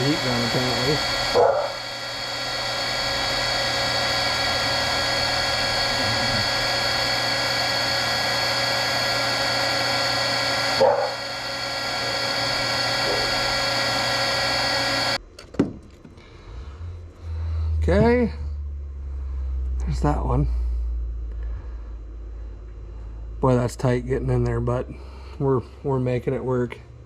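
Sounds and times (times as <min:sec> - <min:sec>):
heat gun running: 0:00.0 - 0:15.2.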